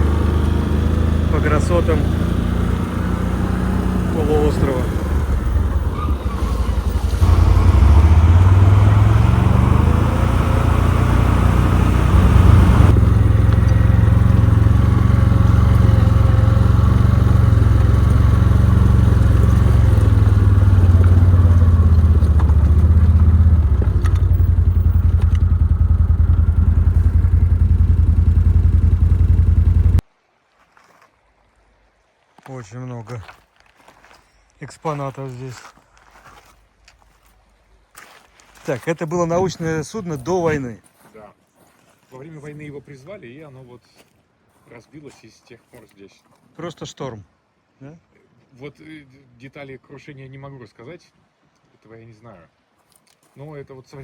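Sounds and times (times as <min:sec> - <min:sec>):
quad bike engine revving: 0:00.0 - 0:30.0.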